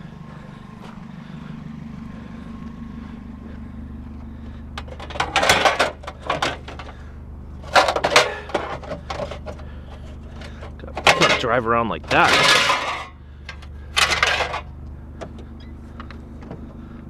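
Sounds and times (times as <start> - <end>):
car engine idling: 0.0 - 17.0
scrap metal clattering: 4.2 - 14.7.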